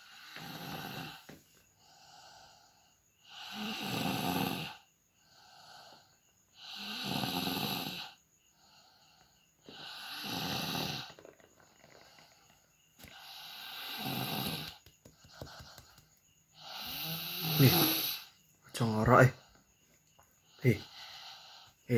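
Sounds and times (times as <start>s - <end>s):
person snoring loudly: 0.0s - 1.3s, 3.2s - 5.8s, 6.6s - 8.2s, 9.7s - 12.4s, 13.1s - 14.8s, 16.6s - 18.3s
quiet breaths: 0.0s - 21.9s.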